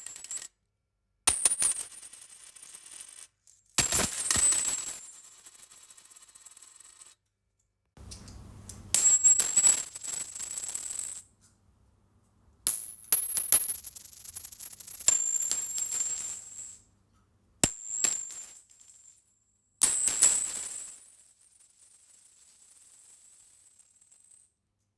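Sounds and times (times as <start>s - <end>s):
metal coins dropping: 1.3s - 7.1s, 12.7s - 16.8s.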